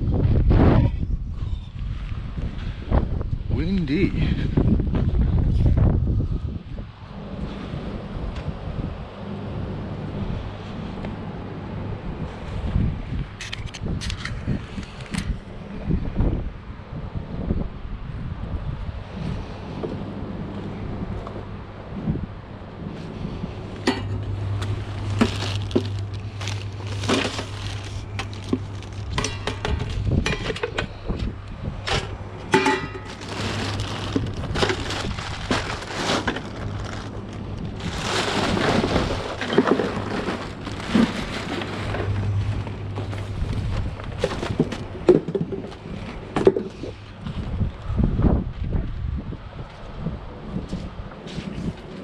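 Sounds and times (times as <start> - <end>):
steady low hum: 0.0 - 52.0
hard objects clattering: 23.8 - 31.0, 31.9 - 46.8
rustling: 24.2 - 29.4, 32.8 - 44.9.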